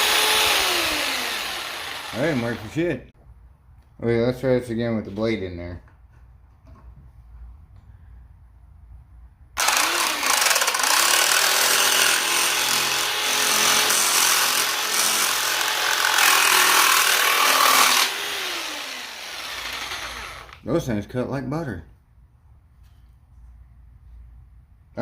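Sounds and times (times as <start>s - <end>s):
jigsaw cutting metal plate: 0.0s - 2.9s, 9.6s - 20.6s.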